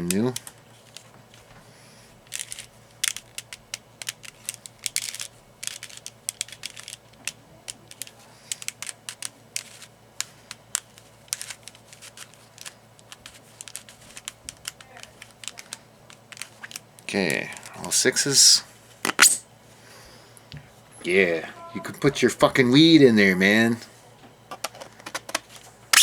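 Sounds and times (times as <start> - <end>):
plastic rings clicking: 0.0 - 1.1, 2.2 - 17.8.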